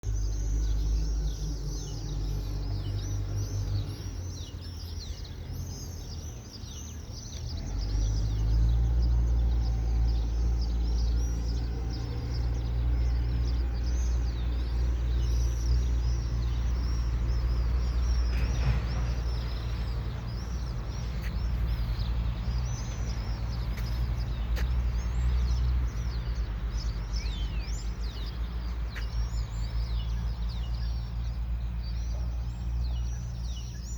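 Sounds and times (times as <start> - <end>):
small birds chirping: 0.0 - 33.9
steady low rumble: 9.2 - 33.3.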